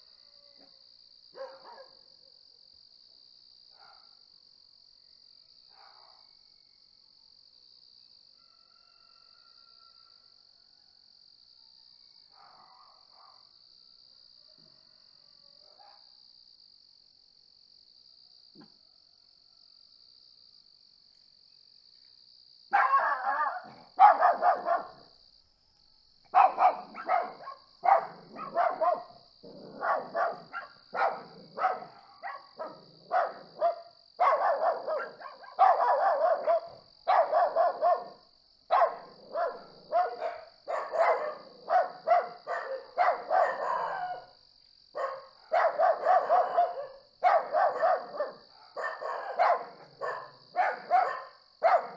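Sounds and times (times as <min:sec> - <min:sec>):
dog barking: 0:01.3 - 0:02.4, 0:03.8 - 0:04.2, 0:05.7 - 0:06.2, 0:12.4 - 0:13.5, 0:15.6 - 0:16.2, 0:22.7 - 0:25.1, 0:26.3 - 0:44.3, 0:45.0 - 0:51.9
crickets trilling: 0:20.0 - 0:51.9.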